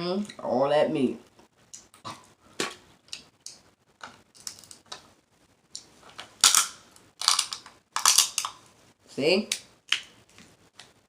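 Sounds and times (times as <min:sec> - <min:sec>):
crab shell cracking: 0:03.1 - 0:05.0, 0:05.8 - 0:08.6.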